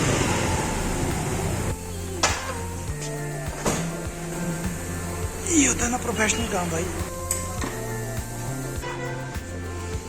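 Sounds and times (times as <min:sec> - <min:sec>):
road traffic with low hum: 0:00.0 - 0:02.9.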